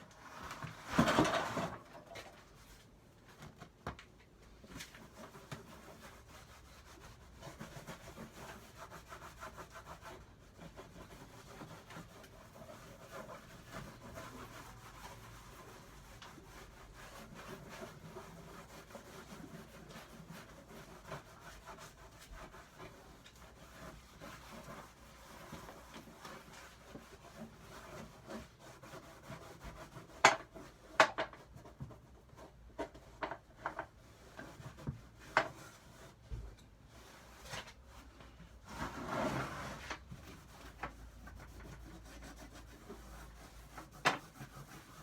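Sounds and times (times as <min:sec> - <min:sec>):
cloth rubbing on wood: 0:38.6 - 0:45.0.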